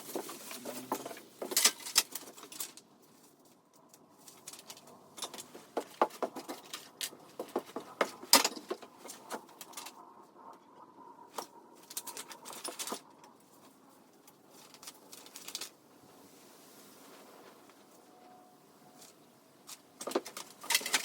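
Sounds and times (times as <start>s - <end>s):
metal and plastic parts clattering: 0.0s - 10.0s, 11.3s - 15.8s, 19.0s - 21.0s.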